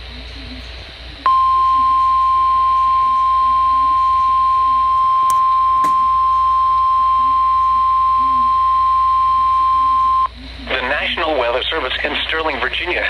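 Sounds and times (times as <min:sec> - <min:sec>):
steady alarm beep: 0:01.3 - 0:10.3.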